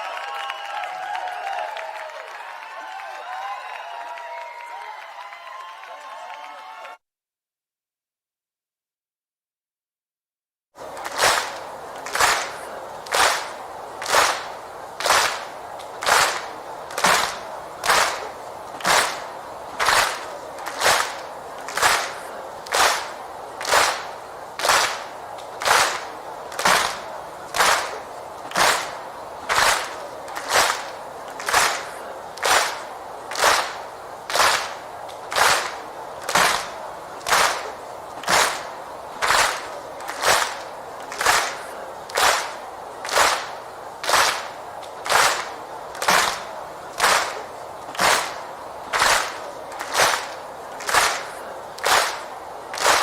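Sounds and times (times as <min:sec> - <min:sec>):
crowd clapping in unison: 0:00.0 - 0:07.0, 0:10.8 - 0:53.0
crowd murmur: 0:10.8 - 0:53.0.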